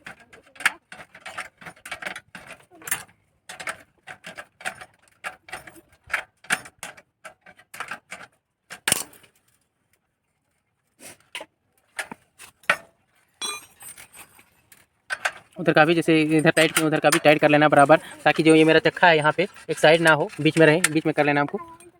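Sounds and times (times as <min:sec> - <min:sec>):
metallic ring: 0:13.4 - 0:14.2
spanner clicking on bicycle nuts: 0:15.1 - 0:21.9.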